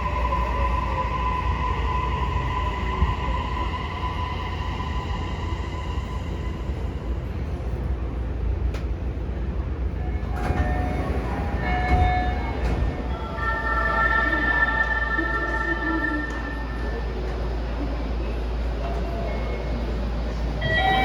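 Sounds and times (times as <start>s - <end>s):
low rumble of wheels on rail: 0.0s - 21.0s.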